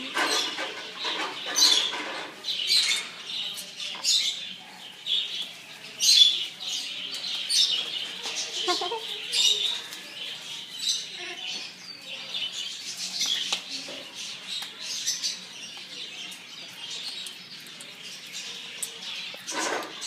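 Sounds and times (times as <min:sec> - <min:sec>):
pet birds chirping: 0:00.0 - 0:20.0.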